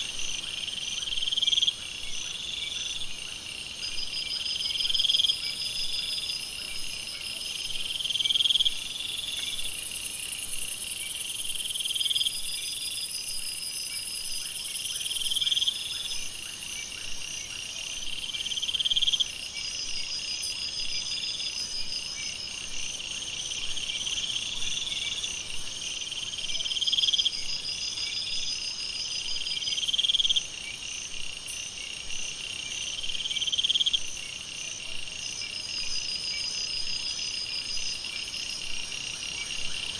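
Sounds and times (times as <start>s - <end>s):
insects and frogs trilling: 0.0s - 39.9s.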